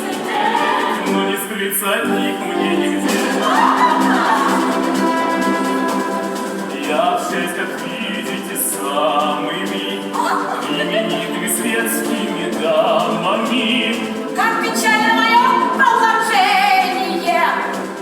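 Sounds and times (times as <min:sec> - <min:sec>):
instrumental accompaniment: 0:00.0 - 0:18.0
person singing with vibrato: 0:00.0 - 0:18.0.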